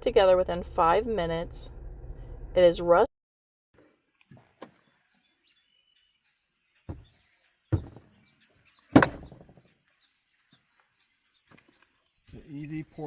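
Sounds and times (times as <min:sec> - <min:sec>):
heavy thunks with ring: 0:09.0 - 0:09.5.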